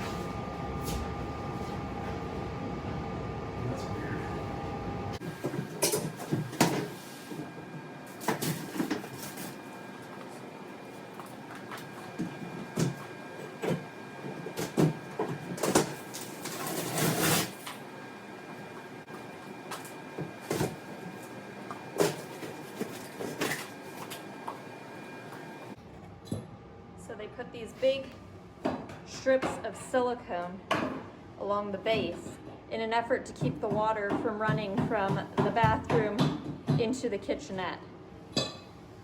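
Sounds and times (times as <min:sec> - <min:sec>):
scraping or tearing: 0:16.4 - 0:17.6.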